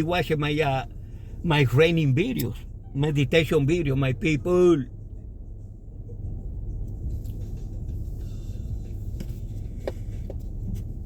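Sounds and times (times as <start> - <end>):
car road and engine noise: 0.0 - 11.0.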